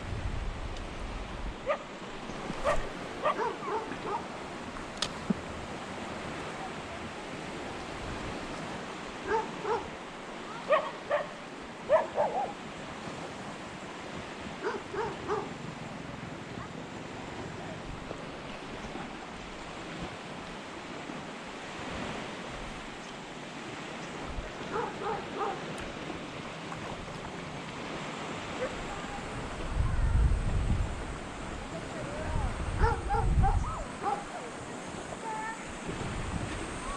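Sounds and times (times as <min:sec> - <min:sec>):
wind buffeting microphone: 0:00.0 - 0:20.4, 0:23.7 - 0:36.9
sea surf washing on shore: 0:00.0 - 0:36.9
wind: 0:00.0 - 0:36.9
dog yapping: 0:02.6 - 0:04.2, 0:09.3 - 0:09.8, 0:10.7 - 0:12.6, 0:14.6 - 0:15.5, 0:24.7 - 0:25.6, 0:32.8 - 0:34.3.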